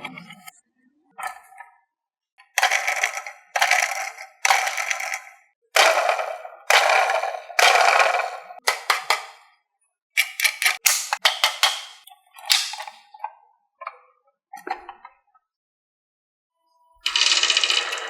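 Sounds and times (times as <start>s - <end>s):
marbles rolling down wooden run: 2.6s - 9.3s, 17.1s - 18.0s.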